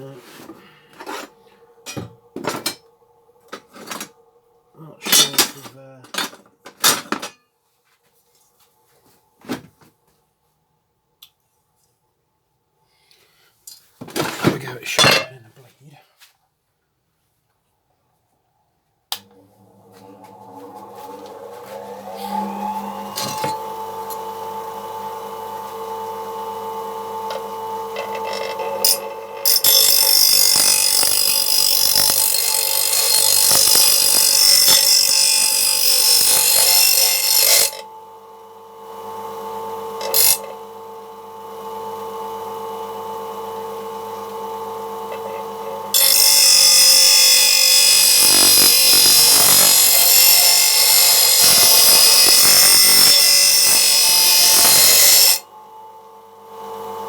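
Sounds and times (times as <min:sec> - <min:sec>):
bench grinder motor hum: 0:19.2 - 0:57.0.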